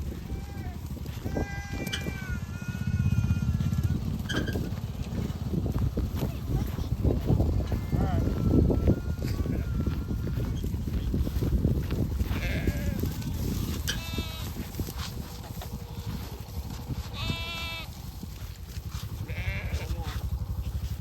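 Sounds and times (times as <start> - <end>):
steady low rumble: 0.0 - 21.0
sheep bleating: 0.1 - 4.0, 7.6 - 11.0, 12.2 - 14.7, 17.0 - 18.0, 19.2 - 20.3.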